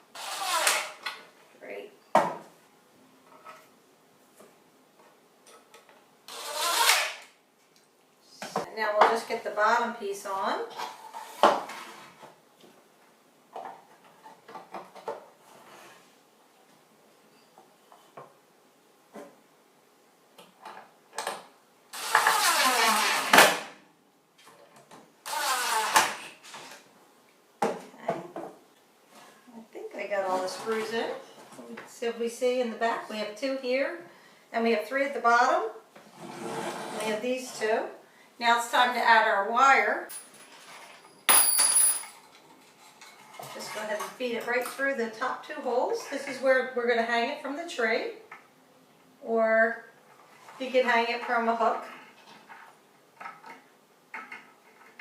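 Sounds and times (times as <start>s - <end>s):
electric screw gun driving screws: 0.1s - 1.0s, 6.3s - 7.2s, 22.0s - 23.6s, 25.3s - 26.3s.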